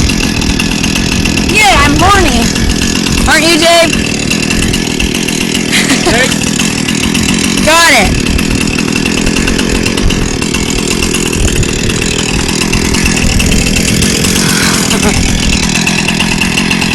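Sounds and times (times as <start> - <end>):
chainsaw running at high speed: 0.0 - 16.9.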